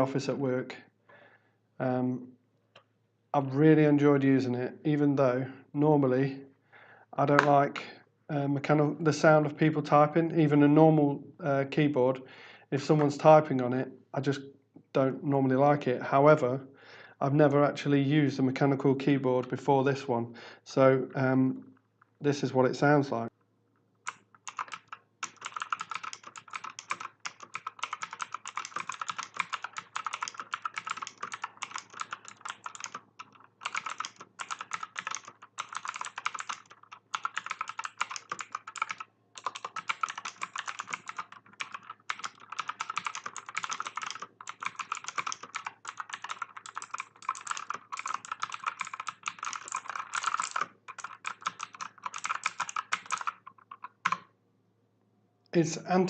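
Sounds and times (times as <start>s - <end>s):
clicky mechanical keyboard typing: 7.3s - 7.7s, 24.0s - 54.3s.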